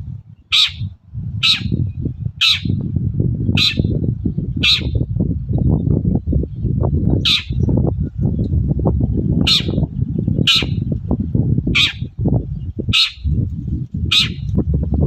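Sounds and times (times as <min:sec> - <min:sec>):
steady low rumble: 0:00.0 - 0:15.0
bird giving harsh calls: 0:00.5 - 0:01.8, 0:02.4 - 0:02.8, 0:03.6 - 0:03.9, 0:04.6 - 0:05.0, 0:07.2 - 0:07.7, 0:09.5 - 0:09.8, 0:10.4 - 0:10.8, 0:11.7 - 0:12.1, 0:12.9 - 0:13.2, 0:14.1 - 0:14.4.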